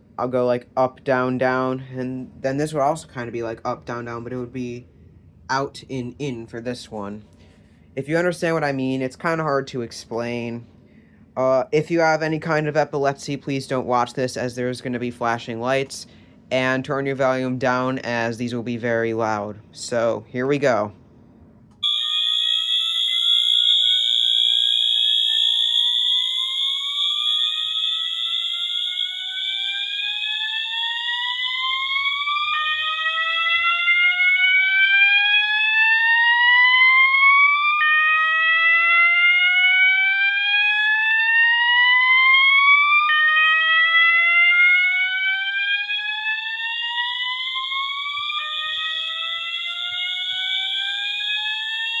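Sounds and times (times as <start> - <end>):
steady high-pitched alarm horn: 21.8 - 52.0
whooping alarm sweep: 21.8 - 52.0.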